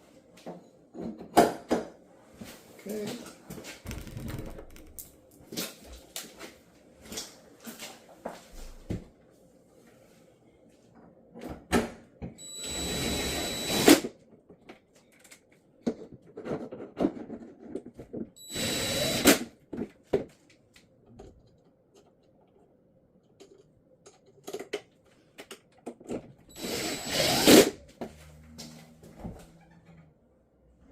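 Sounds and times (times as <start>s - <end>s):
power drill motor whine: 12.4s - 14.0s, 18.4s - 19.4s, 26.5s - 27.7s.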